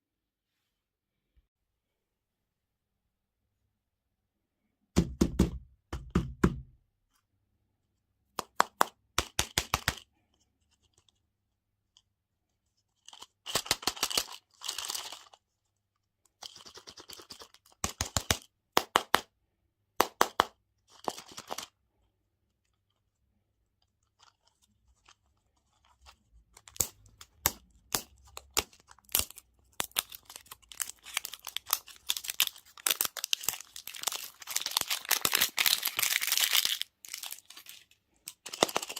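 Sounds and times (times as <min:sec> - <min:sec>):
plastic wrappers crinkling and tearing: 0:13.0 - 0:15.4, 0:23.9 - 0:38.9.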